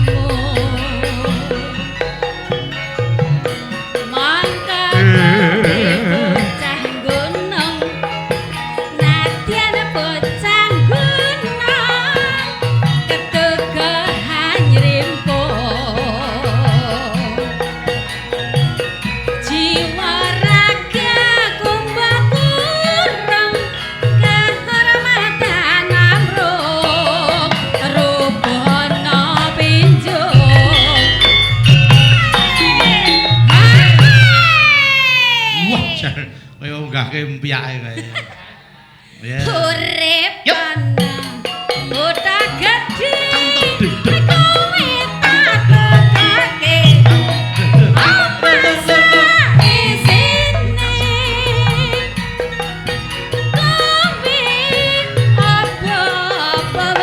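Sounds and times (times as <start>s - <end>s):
hand drum strokes: 0.0s - 34.8s, 41.1s - 57.0s
gamelan melody: 0.0s - 35.9s, 40.8s - 57.0s.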